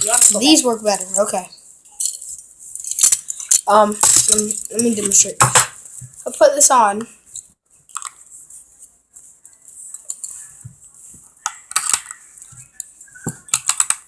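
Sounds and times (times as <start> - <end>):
metal handcuffs clinking: 2.0 - 5.1.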